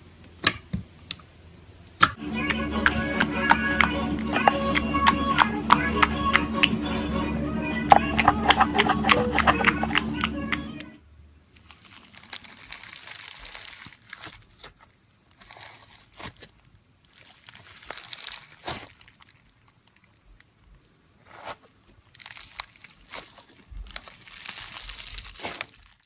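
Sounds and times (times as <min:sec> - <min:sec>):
slime squeezed crackling and popping: 0:11.6 - 0:14.8, 0:17.1 - 0:20.2, 0:22.1 - 0:26.0.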